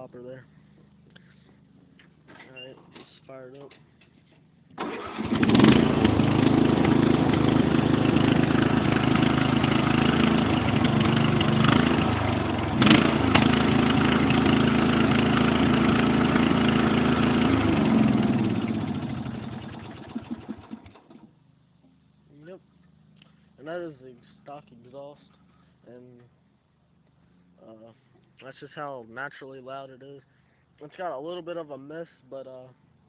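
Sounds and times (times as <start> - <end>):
electric starter cranking: 4.8 - 7.9, 17.6 - 21.3
lawn mower engine running: 4.8 - 21.3.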